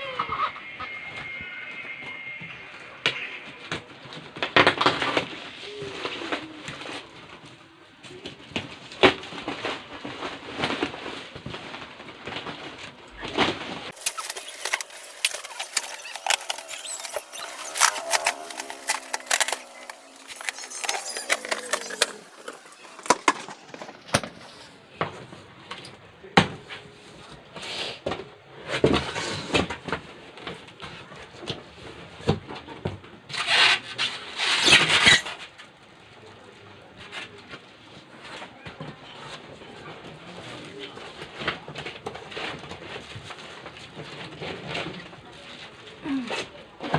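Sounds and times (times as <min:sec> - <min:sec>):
plastic wrap rustling: 0:13.9 - 0:24.7
sharp clicks and knocks: 0:14.0 - 0:24.7.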